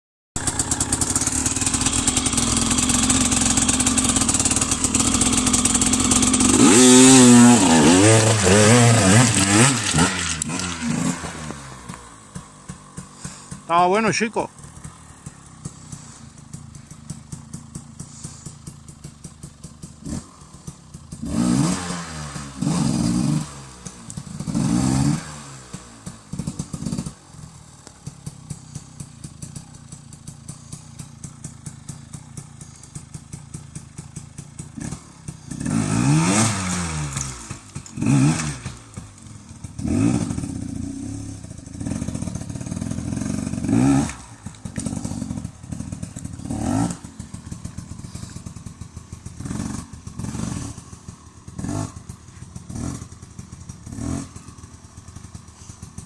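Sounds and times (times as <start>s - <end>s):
motorcycle engine revving: 0.4s - 13.8s, 14.5s - 56.0s.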